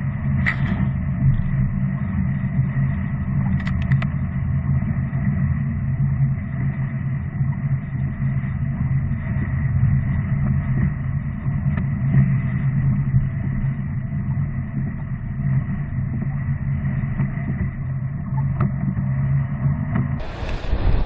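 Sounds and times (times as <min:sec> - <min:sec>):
wind noise: 0:20.2 - 0:21.0.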